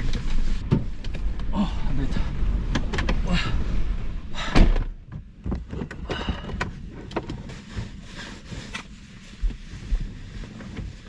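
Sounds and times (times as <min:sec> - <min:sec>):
wind buffeting car: 0:00.0 - 0:11.0
small knocks and rustles: 0:04.8 - 0:11.0.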